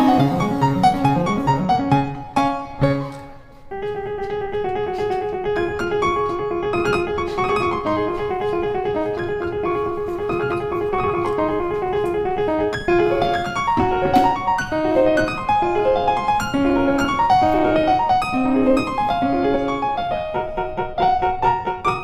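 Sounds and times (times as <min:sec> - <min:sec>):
piano music: 0:00.0 - 0:22.0.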